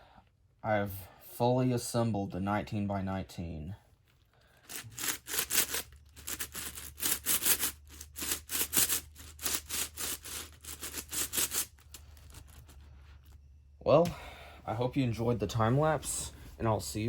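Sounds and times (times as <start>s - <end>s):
puzzle cube turning and clacking: 4.6s - 12.8s.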